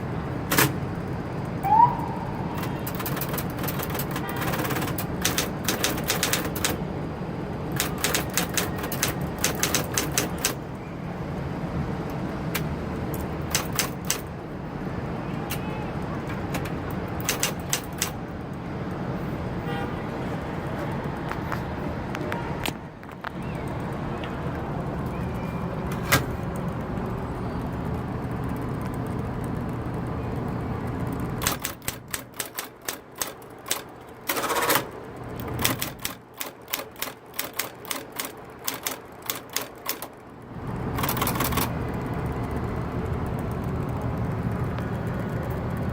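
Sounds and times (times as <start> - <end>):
typewriter keystrokes clattering: 0.5 - 0.8, 2.6 - 6.8, 7.7 - 10.6, 12.6 - 14.3, 16.3 - 18.2, 31.4 - 40.2, 40.9 - 41.8
typewriter motor humming: 2.6 - 6.8, 7.7 - 10.6, 12.6 - 14.3, 16.3 - 18.2, 30.8 - 44.1
typewriter rasping bursts: 2.6 - 6.8, 7.7 - 10.6, 13.2 - 14.3, 16.5 - 18.2, 31.4 - 40.1, 40.9 - 41.7.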